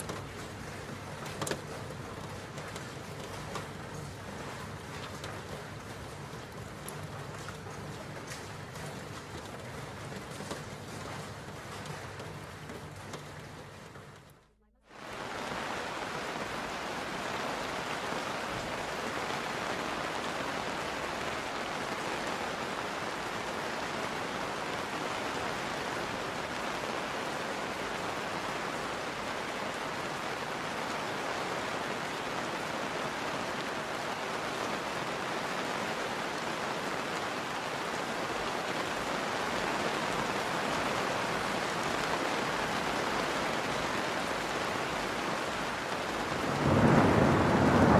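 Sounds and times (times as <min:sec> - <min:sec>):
steady rain hiss: 0:14.8 - 0:47.9.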